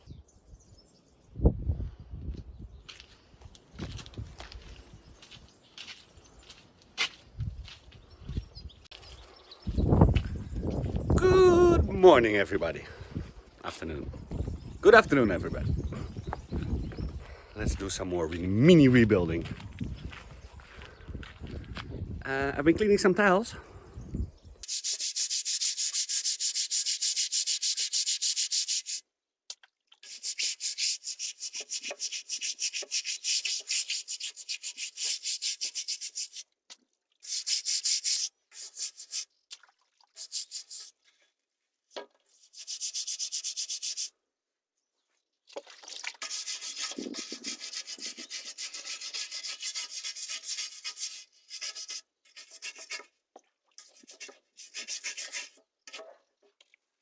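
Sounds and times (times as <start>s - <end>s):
scrubbing roof tile: 24.6s - 44.1s, 45.5s - 56.8s.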